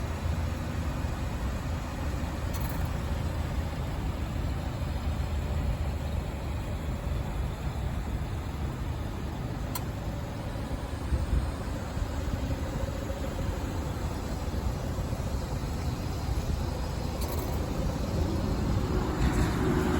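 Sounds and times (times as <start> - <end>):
car engine idling: 0.0 - 19.9.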